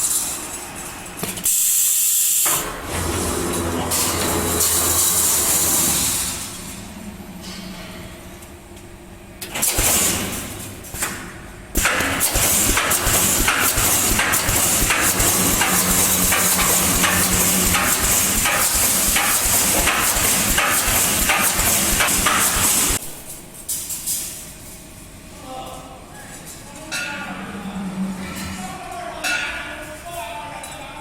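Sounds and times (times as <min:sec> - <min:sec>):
welding heads knocking: 0:11.8 - 0:23.0.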